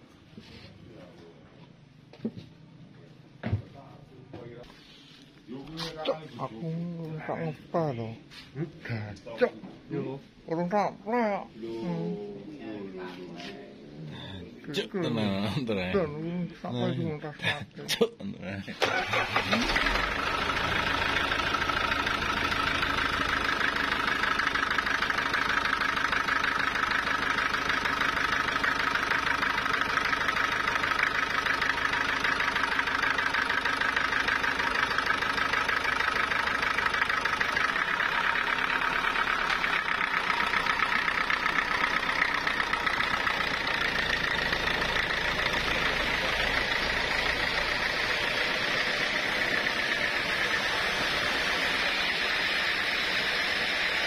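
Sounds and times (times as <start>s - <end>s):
engine running steadily: 18.9s - 54.0s.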